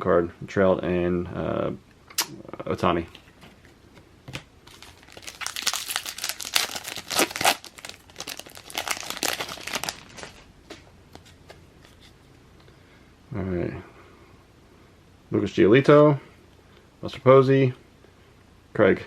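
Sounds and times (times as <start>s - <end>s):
card wrapper crinkling and tearing: 3.2s - 10.5s.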